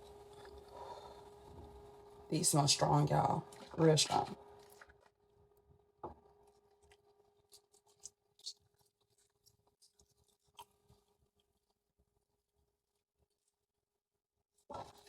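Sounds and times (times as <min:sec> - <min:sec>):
faint steady hum: 0:00.0 - 0:04.9.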